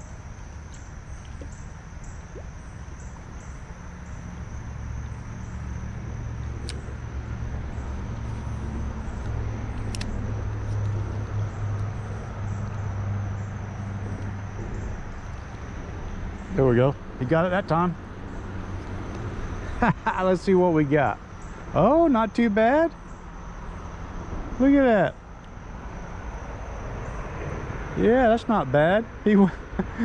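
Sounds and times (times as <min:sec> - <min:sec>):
high insect buzz: 0:00.0 - 0:28.4
passing vehicle rumble: 0:00.0 - 0:29.9
sharp ticks: 0:05.0 - 0:12.7.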